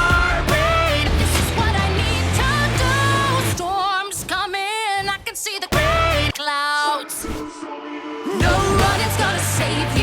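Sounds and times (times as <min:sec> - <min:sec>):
heavy bass line: 0:00.0 - 0:03.6, 0:08.4 - 0:10.0
person singing: 0:00.0 - 0:10.0.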